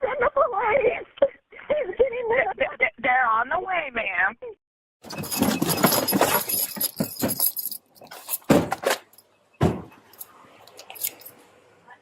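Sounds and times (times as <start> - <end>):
metal bits jangling: 5.0 - 9.2, 10.1 - 11.4
heavy thumps: 9.6 - 10.0.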